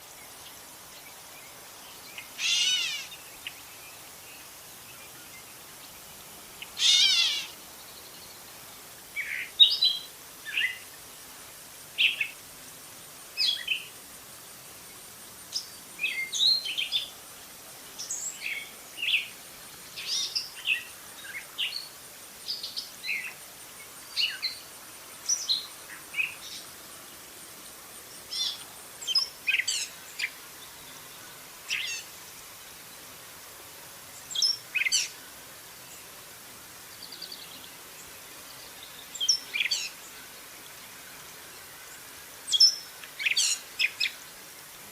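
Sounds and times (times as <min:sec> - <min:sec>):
bird song squeaky chattering: 0:02.4 - 0:03.1, 0:06.8 - 0:07.5
bird mewing calls: 0:02.4 - 0:03.2, 0:06.8 - 0:07.6.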